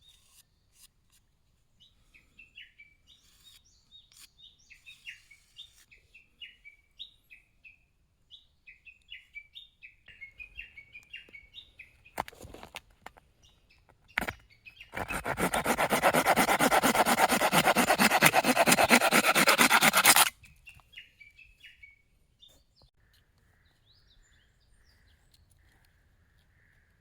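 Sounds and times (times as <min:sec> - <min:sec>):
small birds chirping: 0:01.8 - 0:16.4
short scrapes: 0:14.9 - 0:20.3
rubbing strokes on wood: 0:15.0 - 0:20.3.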